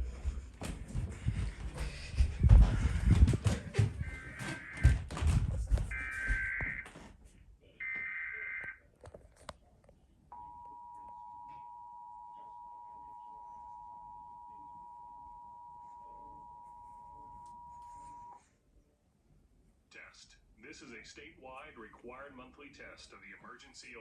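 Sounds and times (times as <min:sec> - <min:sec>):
two-tone attention signal: 0:10.4 - 0:18.4.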